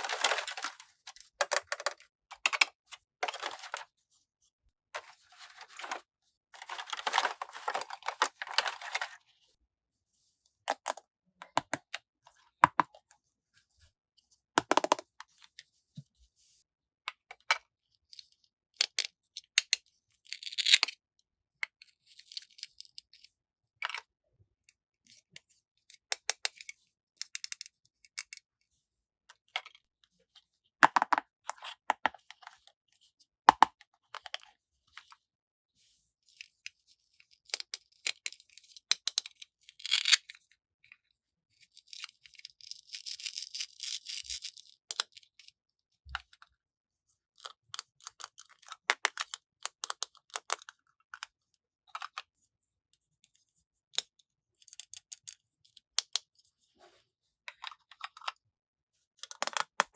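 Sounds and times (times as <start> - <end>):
packaging crinkling: 0.0 - 0.8, 6.6 - 9.0
plastic pieces clicking and tapping: 0.0 - 3.8, 14.6 - 15.0, 38.9 - 40.2, 47.4 - 51.3, 59.2 - 59.9.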